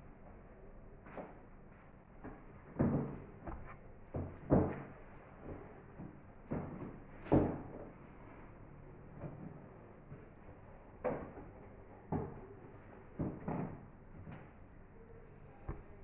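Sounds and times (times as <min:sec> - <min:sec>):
books knocking and thumping: 0:02.2 - 0:08.0, 0:13.2 - 0:14.6.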